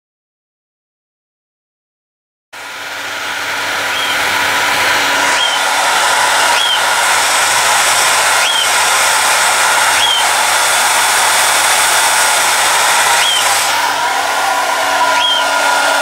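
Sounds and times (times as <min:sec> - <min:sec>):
hair dryer blowing: 0:02.6 - 0:16.0.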